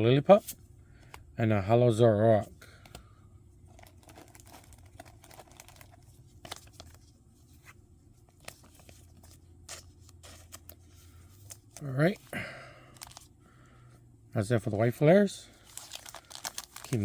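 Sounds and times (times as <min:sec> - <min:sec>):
low steady hum: 0:00.0 - 0:17.0
trading cards and wrapper rustling: 0:03.7 - 0:12.3, 0:12.9 - 0:13.3, 0:15.5 - 0:17.0.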